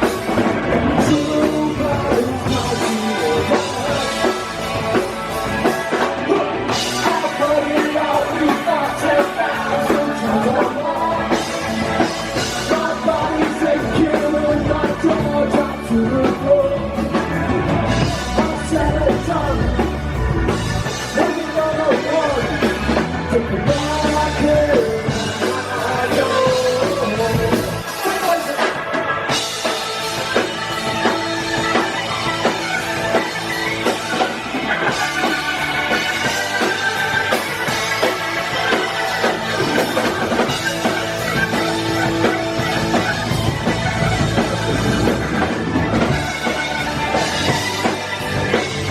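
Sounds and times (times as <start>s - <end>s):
live rock band playing: 0.0s - 48.9s
wavering lead melody: 29.3s - 48.9s.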